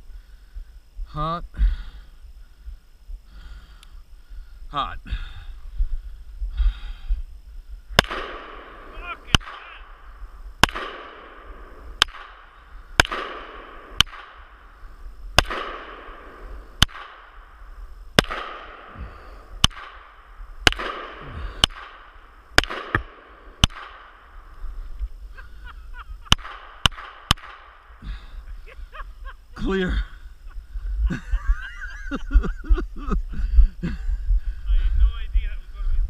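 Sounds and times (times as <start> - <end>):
rolling gunshot echo: 8.0 - 9.7, 10.6 - 14.5, 15.4 - 17.4, 18.2 - 24.2, 26.3 - 27.8
pistol gunfire: 8.0 - 10.0, 10.6 - 14.6, 15.4 - 17.4, 18.2 - 19.0, 19.6 - 24.3, 26.3 - 27.8.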